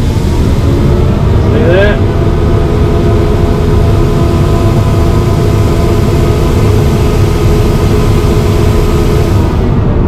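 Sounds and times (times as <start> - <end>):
diesel engine and compressor rumble: 0.0 - 10.0
steady whine: 0.0 - 10.0.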